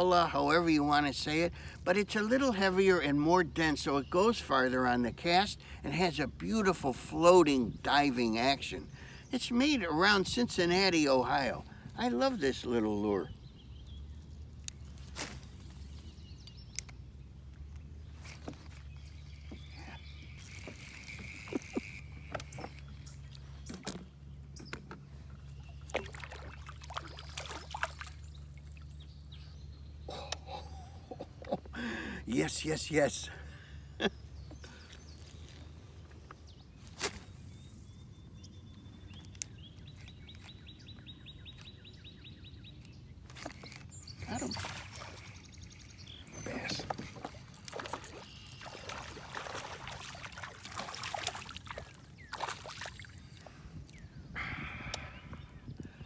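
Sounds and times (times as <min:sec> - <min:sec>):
water splashing: 0:25.8 - 0:28.9, 0:43.5 - 0:53.5.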